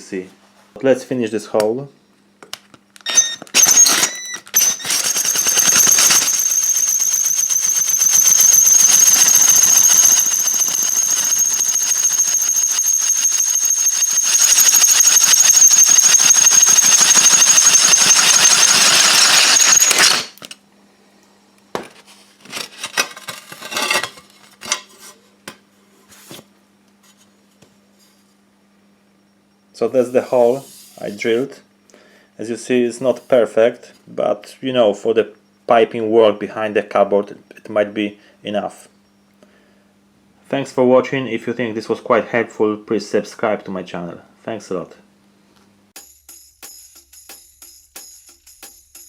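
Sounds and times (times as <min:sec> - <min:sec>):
power drill cutting through tile: 0:03.1 - 0:20.5.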